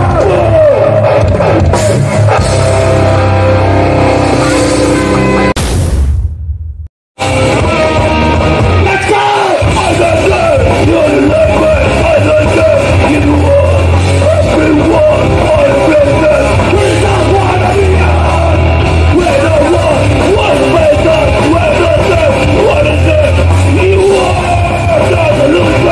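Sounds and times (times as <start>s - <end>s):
bass guitar: 0.0s - 5.8s, 6.6s - 25.9s
distorted guitars: 0.0s - 6.0s, 7.2s - 25.9s
drums: 0.0s - 25.9s
shouted vocals: 8.5s - 25.9s.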